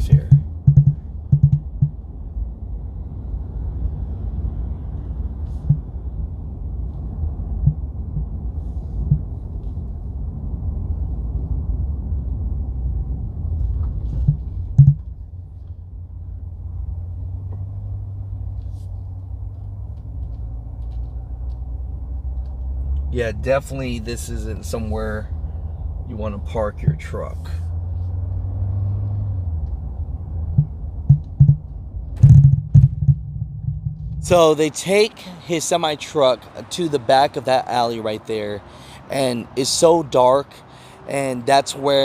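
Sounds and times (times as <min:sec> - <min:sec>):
low thumps: 0:00.0 - 0:02.1, 0:05.5 - 0:06.2, 0:07.5 - 0:09.4, 0:13.8 - 0:15.2, 0:26.7 - 0:27.2, 0:30.4 - 0:34.6
car cabin rumble while driving: 0:00.0 - 0:35.1.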